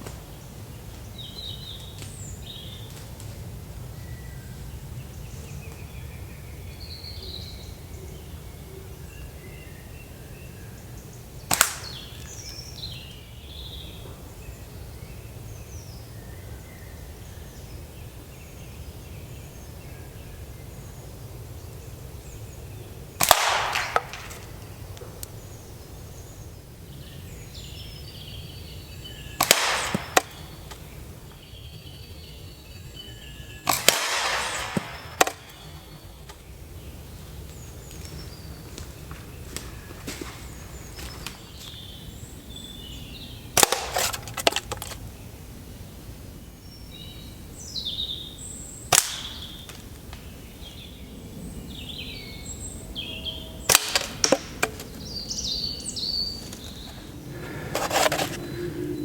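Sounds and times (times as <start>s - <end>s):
birds chirping faintly: 0.0s - 59.0s
shots striking targets: 11.5s - 12.0s, 23.2s - 24.6s, 29.4s - 30.5s, 33.7s - 35.7s, 43.6s - 44.1s, 53.7s - 54.8s
slingshot shot cracks: 11.5s - 12.3s, 23.2s - 24.7s, 29.4s - 30.6s, 33.7s - 35.8s, 43.6s - 44.4s, 48.9s - 49.6s, 53.7s - 54.8s
steady low rumble: 50.0s - 59.0s.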